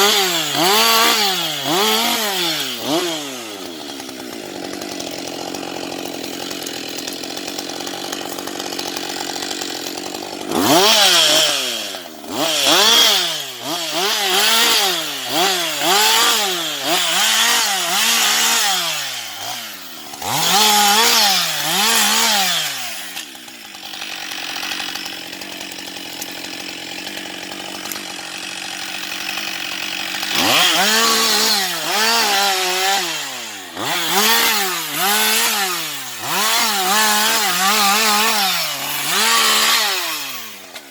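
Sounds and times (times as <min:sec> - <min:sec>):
chainsaw idling and revving: 0:00.0 - 0:40.9.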